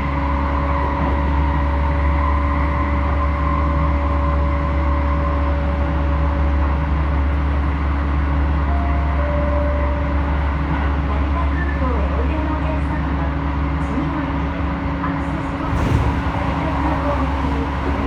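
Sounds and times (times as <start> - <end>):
train wheels rumbling on rail: 0.0 - 18.0.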